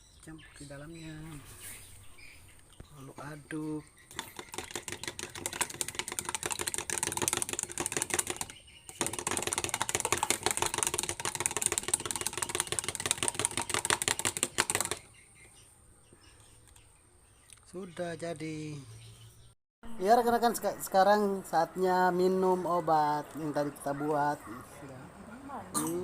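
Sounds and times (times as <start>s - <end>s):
utensil scraping and clicking container: 4.1s - 15.0s.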